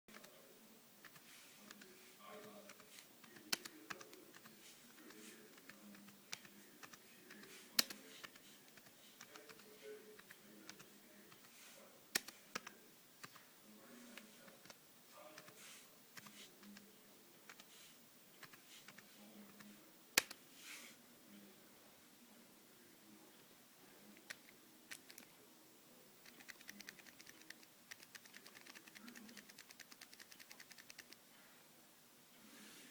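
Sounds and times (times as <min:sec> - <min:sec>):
keyboard typing: 0:00.1 - 0:00.4, 0:01.0 - 0:11.5, 0:12.2 - 0:13.4, 0:17.5 - 0:17.7, 0:24.2 - 0:25.3, 0:26.2 - 0:31.2.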